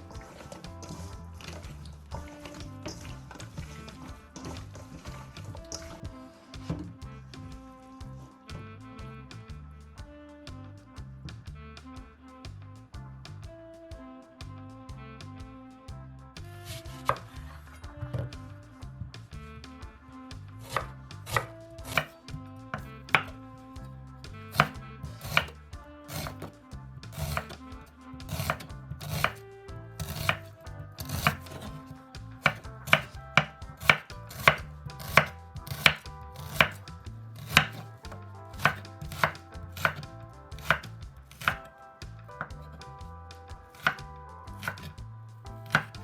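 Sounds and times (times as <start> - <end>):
knife chopping on cutting board: 20.6 - 22.1, 22.8 - 23.3, 24.5 - 26.5, 27.1 - 27.6, 28.3 - 29.4, 30.0 - 36.8, 37.4 - 41.7, 43.7 - 45.0, 45.6 - 46.0.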